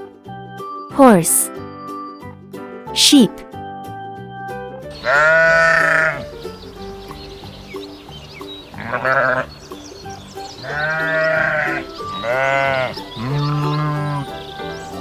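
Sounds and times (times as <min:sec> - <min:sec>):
light background music: 0:00.0 - 0:15.0
sheep bleating: 0:05.0 - 0:06.2, 0:08.8 - 0:09.5, 0:10.6 - 0:14.3.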